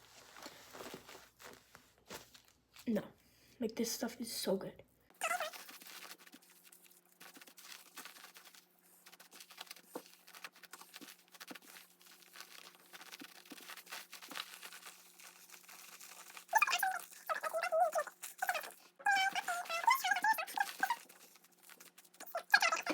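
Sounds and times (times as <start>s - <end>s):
wet stuffing crackling and tearing: 0.0s - 3.0s, 5.2s - 22.9s
high-pitched voice-like sound: 5.2s - 5.7s, 16.5s - 21.1s, 22.2s - 22.9s.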